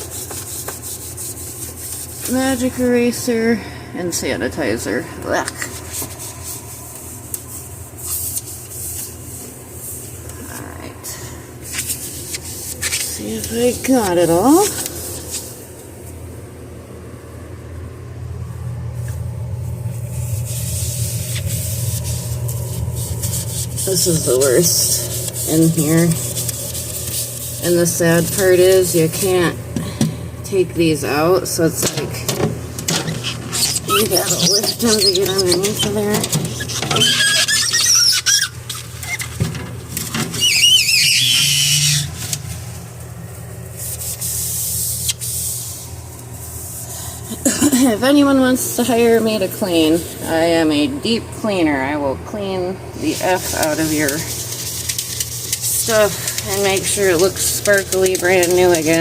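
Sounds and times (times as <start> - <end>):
soft rubbing hiss: 5.6 - 10.6, 11.6 - 16.2, 19.0 - 29.4, 53.0 - 59.0
steady low rumble: 9.2 - 32.9
squeaks of plastic being rubbed: 32.9 - 42.4, 53.2 - 59.0.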